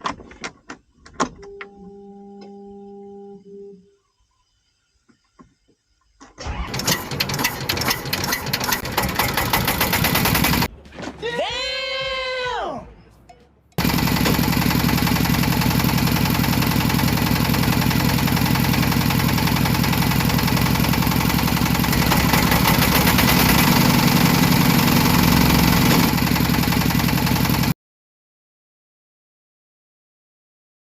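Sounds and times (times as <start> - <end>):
small diesel engine running: 6.4 - 10.7, 13.8 - 27.8.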